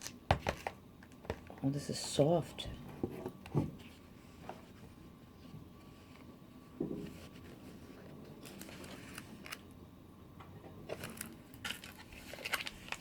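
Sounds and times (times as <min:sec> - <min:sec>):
plastic packaging crinkling: 0:08.4 - 0:09.8, 0:10.9 - 0:13.0.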